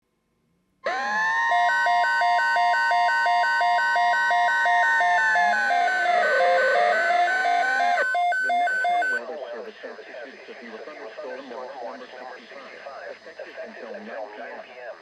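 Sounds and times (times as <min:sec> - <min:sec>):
steady warning alarm tone: 0:00.9 - 0:09.2
pulsing alert beeps: 0:02.1 - 0:09.2.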